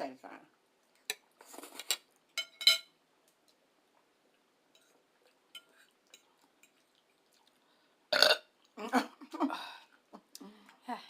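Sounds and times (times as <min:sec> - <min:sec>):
cutlery clinking against a dish: 0:01.8 - 0:02.9, 0:05.6 - 0:06.8.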